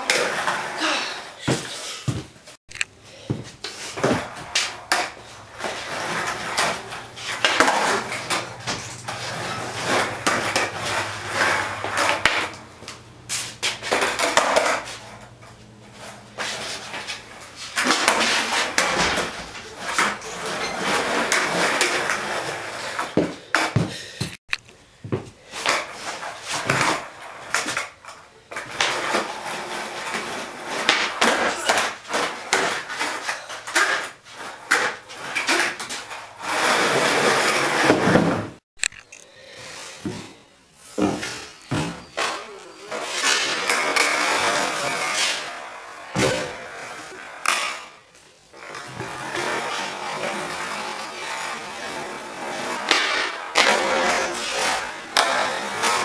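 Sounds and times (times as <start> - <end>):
skateboard rolling on concrete: 0.0 - 24.4, 25.1 - 38.6, 39.5 - 56.0
skateboard clacks and slaps: 3.6 - 13.0, 13.6 - 15.1, 25.6 - 38.6, 41.0 - 48.0, 48.6 - 56.0.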